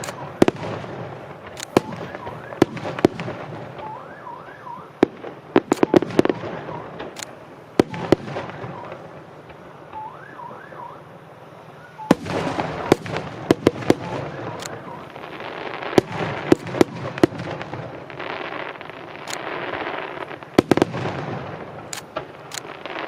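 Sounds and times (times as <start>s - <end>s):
fireworks banging and crackling: 0.0s - 23.0s
warbling siren-like tone: 3.8s - 4.9s, 10.0s - 11.0s.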